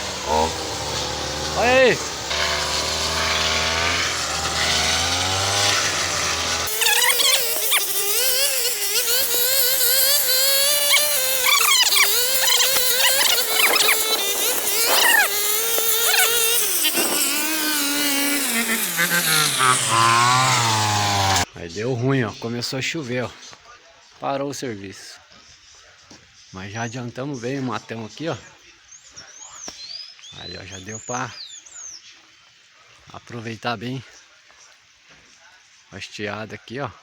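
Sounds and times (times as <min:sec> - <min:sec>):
low engine hum: 0:00.0 - 0:06.8
brush cutter buzzing: 0:00.0 - 0:21.5.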